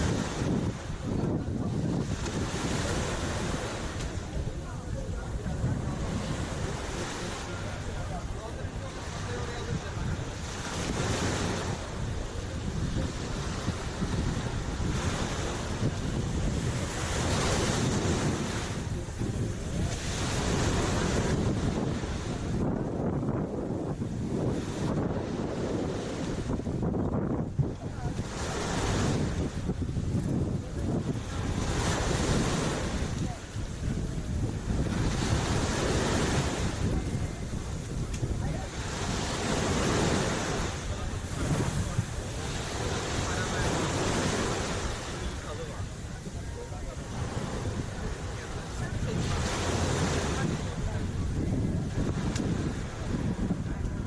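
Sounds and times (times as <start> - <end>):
waves washing onto shore: 0.0 - 54.0
wind gusting across microphone: 0.0 - 54.0
short click: 38.1 - 38.3.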